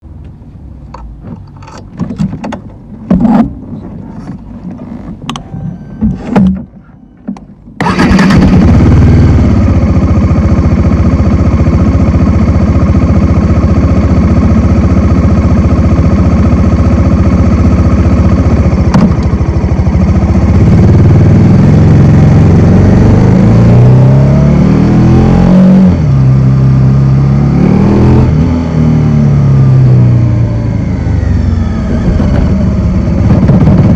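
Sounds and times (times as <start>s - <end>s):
motorcycle engine idling: 7.8s - 22.4s.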